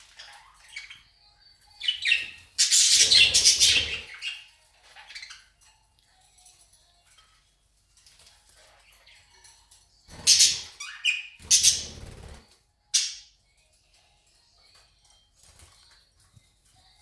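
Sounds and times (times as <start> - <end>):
budgerigars chirping faintly: 0.0 - 5.6, 8.6 - 13.3.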